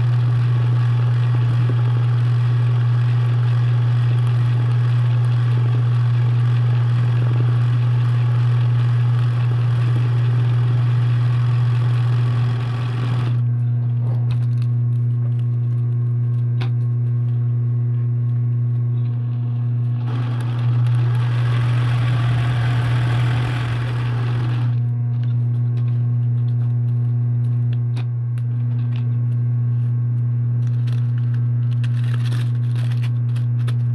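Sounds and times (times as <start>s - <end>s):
embroidery machine running: 0.0s - 14.3s, 19.1s - 24.9s.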